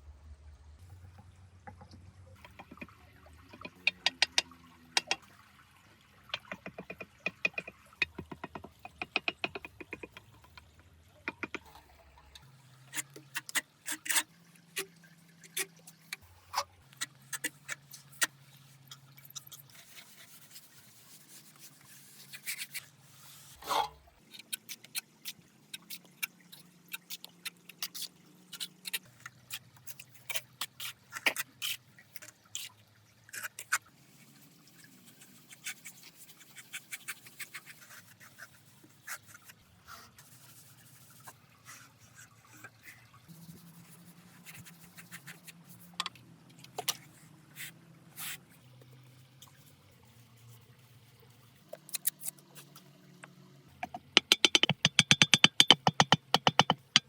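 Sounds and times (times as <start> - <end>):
small clicks and taps on model: 53.2 - 57.0.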